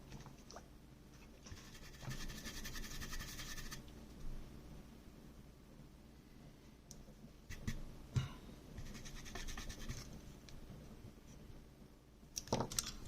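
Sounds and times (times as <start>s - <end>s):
fine scratching: 1.4s - 3.8s.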